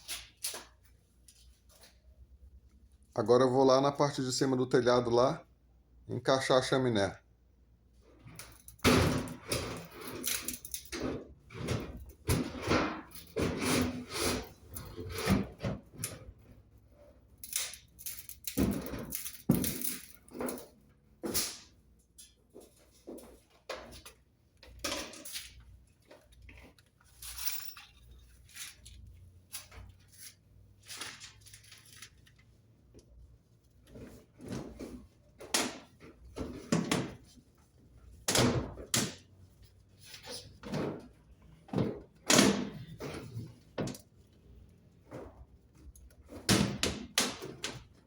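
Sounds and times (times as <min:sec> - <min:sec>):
knocks clunks and scrapes of pipe: 0:08.1 - 0:17.4, 0:33.8 - 0:48.0.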